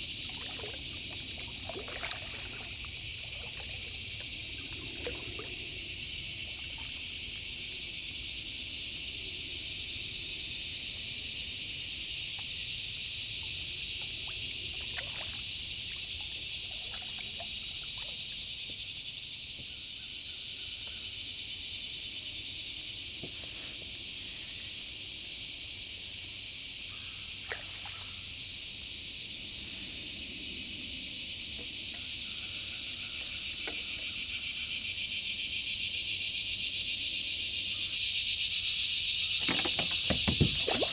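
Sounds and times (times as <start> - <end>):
small water sounds: 0.0 - 8.4, 12.0 - 19.0, 27.3 - 28.6, 39.4 - 40.9
insects droning: 0.0 - 40.9.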